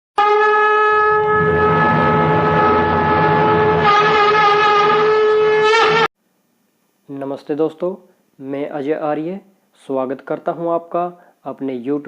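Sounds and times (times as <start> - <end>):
conch shell blown: 0.2 - 6.1.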